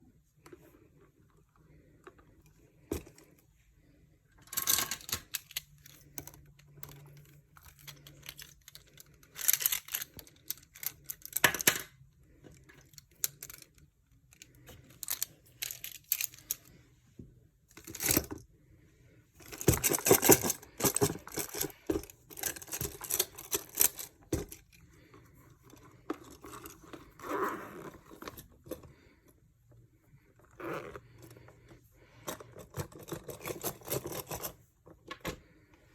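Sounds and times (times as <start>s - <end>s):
pencil case rustling and crinkling: 19.4s - 29.2s, 30.2s - 35.7s.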